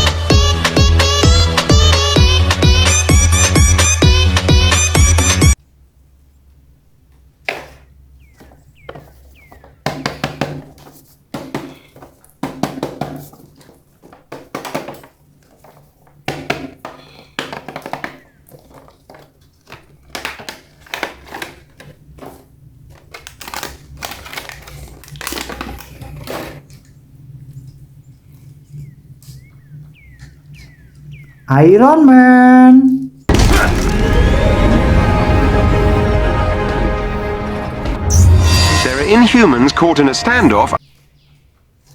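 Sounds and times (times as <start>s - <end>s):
plastic packaging crinkling: 13.3s - 27.0s.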